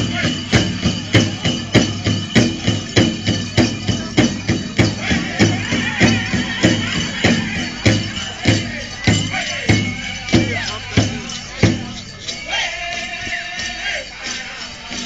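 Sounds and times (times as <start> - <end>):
big drum beating: 0.0 - 12.5
singers' high voices: 0.0 - 15.0.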